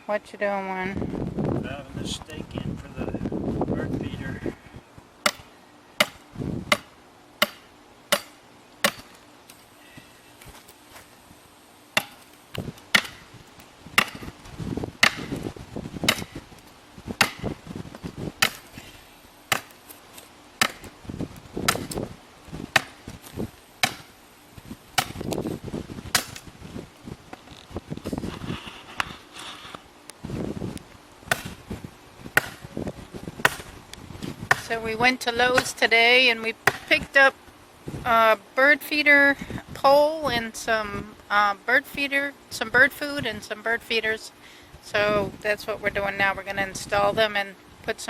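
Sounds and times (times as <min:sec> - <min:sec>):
stake being hammered into ground: 0:05.2 - 0:09.2, 0:12.0 - 0:13.3, 0:14.0 - 0:14.4, 0:15.0 - 0:15.4, 0:16.0 - 0:16.4, 0:17.2 - 0:17.6, 0:18.4 - 0:18.8, 0:19.5 - 0:19.8, 0:20.6 - 0:21.0, 0:21.6 - 0:22.1, 0:22.7 - 0:23.1, 0:23.8 - 0:24.2, 0:25.0 - 0:25.4, 0:26.1 - 0:26.4, 0:31.3 - 0:31.6, 0:32.4 - 0:32.7, 0:33.4 - 0:33.7, 0:34.5 - 0:34.7, 0:35.5 - 0:35.8, 0:36.7 - 0:37.1.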